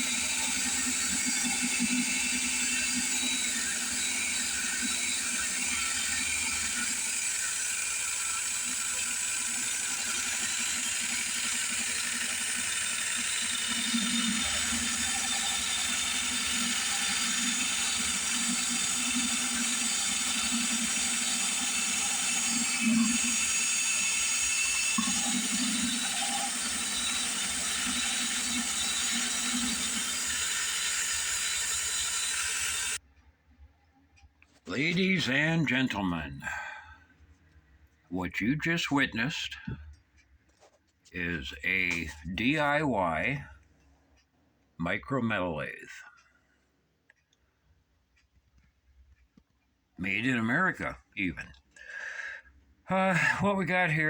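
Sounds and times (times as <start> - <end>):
cordless drill motor whining: 0.0 - 33.0.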